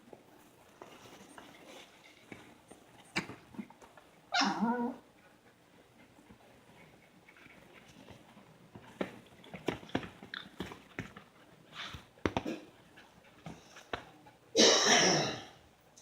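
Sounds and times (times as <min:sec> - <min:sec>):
small dogs scuffling: 0:06.0 - 0:14.2.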